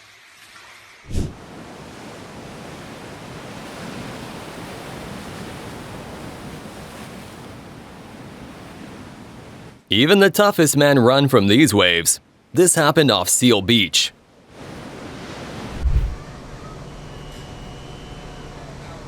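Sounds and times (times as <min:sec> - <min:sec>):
waves breaking: 0:01.1 - 0:16.3
wind buffeting microphone: 0:15.7 - 0:16.3.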